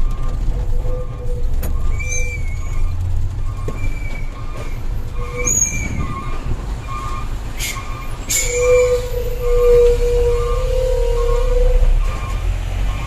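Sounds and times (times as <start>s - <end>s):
diesel engine rumble: 0.0s - 13.0s
high squeaks and creaks: 0.0s - 13.0s.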